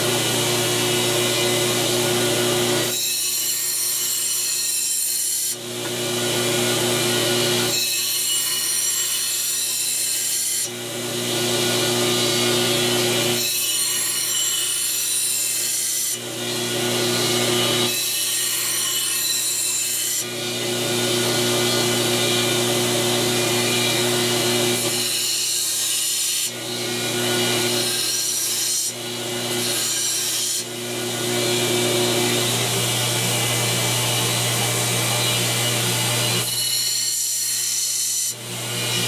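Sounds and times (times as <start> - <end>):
belt grinder motor hum: 0.0 - 2.9.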